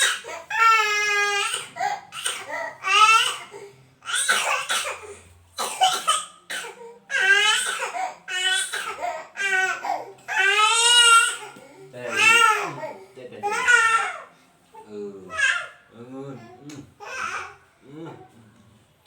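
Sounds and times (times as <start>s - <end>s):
baby coughing: 0.0s - 0.6s, 1.4s - 11.6s
baby crying: 0.0s - 5.1s, 7.0s - 14.3s, 15.3s - 17.6s.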